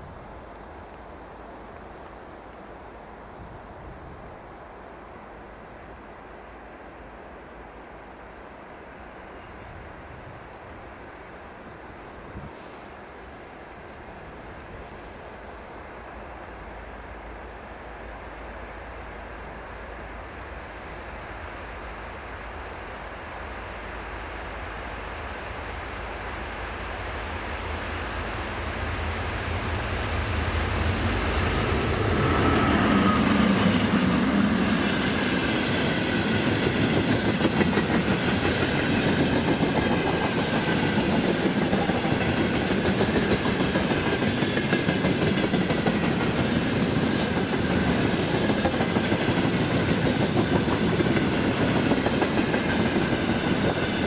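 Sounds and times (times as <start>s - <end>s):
electric locomotive approaching: 2.6s - 54.0s
train wheels clattering on rails: 27.6s - 54.0s.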